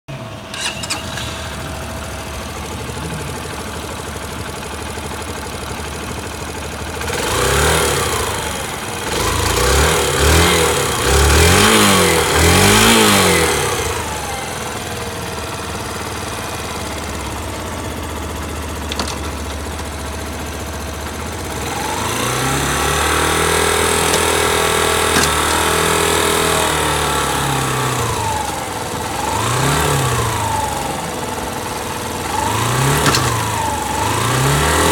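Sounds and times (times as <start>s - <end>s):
motorcycle engine revving: 0.1s - 34.9s.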